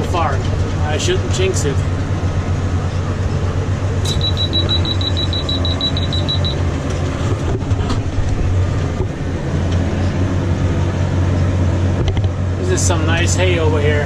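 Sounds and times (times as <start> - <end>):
tractor engine running: 0.0 - 14.0
high electronic beeps: 4.0 - 6.6.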